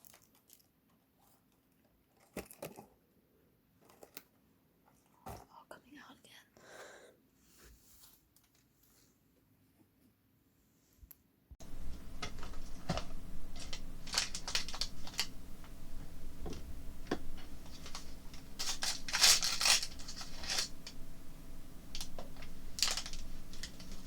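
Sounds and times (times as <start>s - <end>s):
plastic packaging crinkling: 11.6s - 21.0s, 21.8s - 24.0s
plastic tearing: 12.2s - 15.4s, 16.4s - 21.0s, 21.9s - 24.0s.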